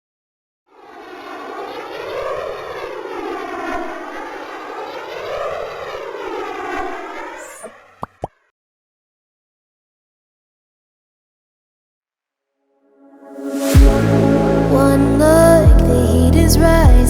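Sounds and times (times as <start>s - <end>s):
siren-like wailing tone: 1.0s - 8.2s.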